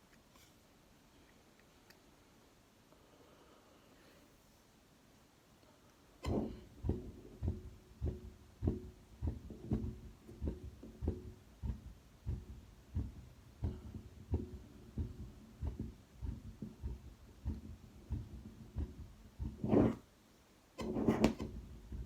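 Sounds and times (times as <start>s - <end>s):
heartbeat thumps: 6.2s - 20.0s, 20.9s - 22.0s.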